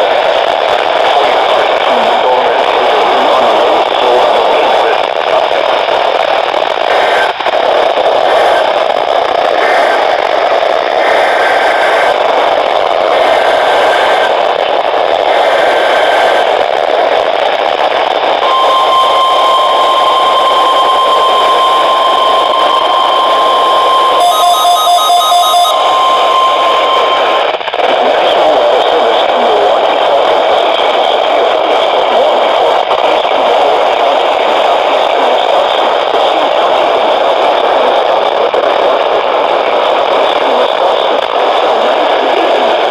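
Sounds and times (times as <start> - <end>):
radio static hiss: 0.0 - 42.9
high warning alarm tone: 18.4 - 27.5.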